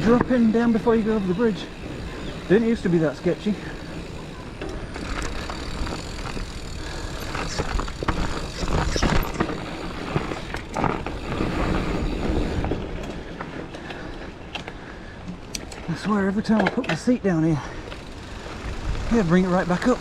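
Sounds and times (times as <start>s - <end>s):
tyre and wind rush: 0.0s - 14.5s, 17.8s - 20.0s
bike knocks and rattles: 0.0s - 14.7s.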